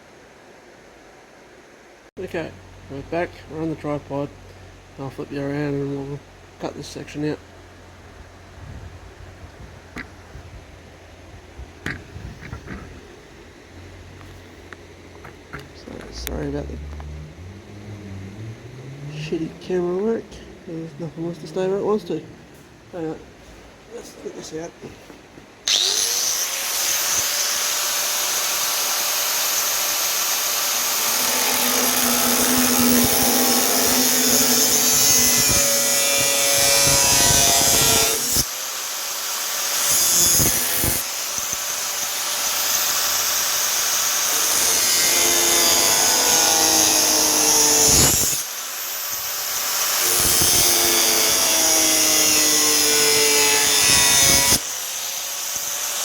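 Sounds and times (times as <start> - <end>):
cut-off tool cutting sheet steel: 25.7 - 56.0.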